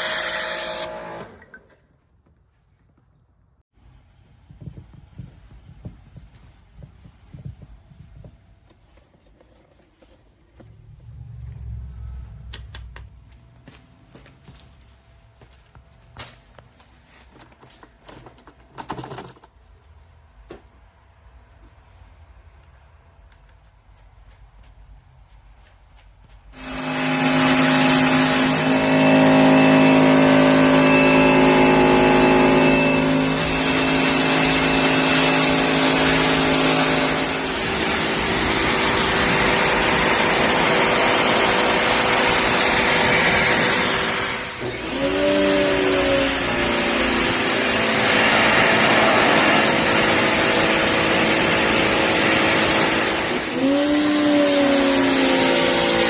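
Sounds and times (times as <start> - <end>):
pressure washer motor humming: 0.0 - 1.6, 26.6 - 56.0.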